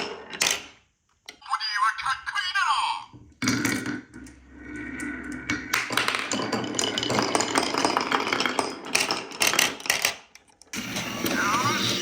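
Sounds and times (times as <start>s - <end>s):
marbles rolling down wooden track: 4.9s - 11.4s.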